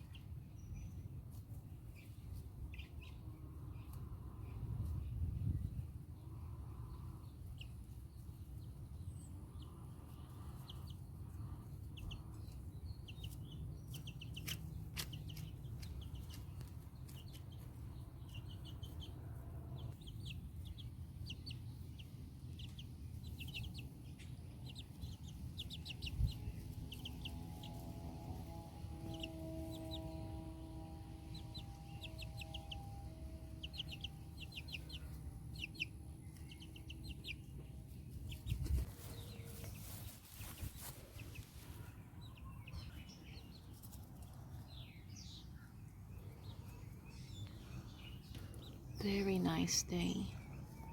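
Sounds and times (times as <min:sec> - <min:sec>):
chicks peeping: 0:00.0 - 0:50.9
faint steady hum: 0:26.1 - 0:38.2.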